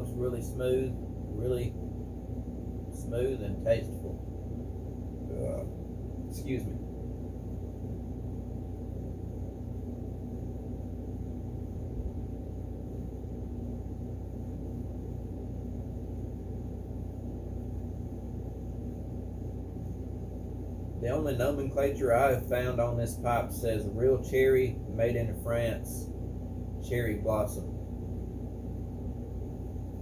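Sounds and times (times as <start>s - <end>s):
low background hum with tones: 0.0s - 30.0s.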